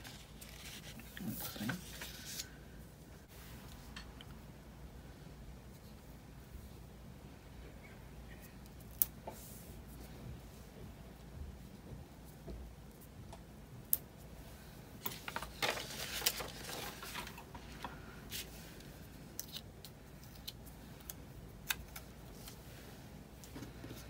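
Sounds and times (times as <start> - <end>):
paper rustling: 0.0 - 2.6, 15.0 - 18.6.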